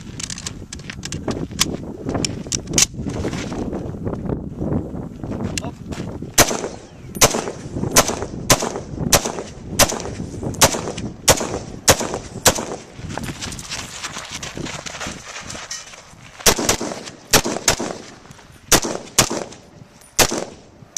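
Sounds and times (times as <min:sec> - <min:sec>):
faint gunshots: 0:06.4 - 0:12.9, 0:16.5 - 0:18.1, 0:18.7 - 0:19.6, 0:20.2 - 0:20.7
rifle shots: 0:06.4 - 0:12.9, 0:16.4 - 0:20.7.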